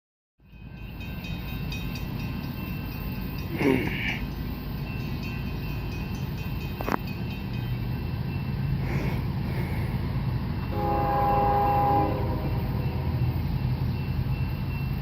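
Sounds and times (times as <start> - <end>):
freight train rumble: 0.4 - 15.0
low engine drone: 7.7 - 14.9.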